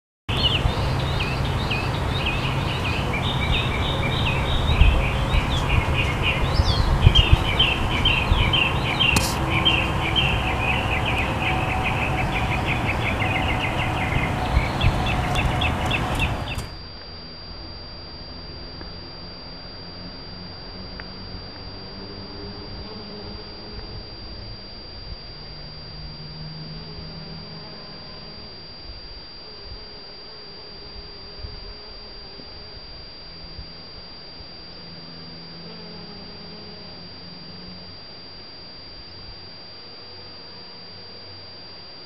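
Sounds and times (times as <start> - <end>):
small birds chirping: 0.3 - 16.8
low steady rumble: 0.3 - 27.4
faint high steady tone: 0.3 - 42.0.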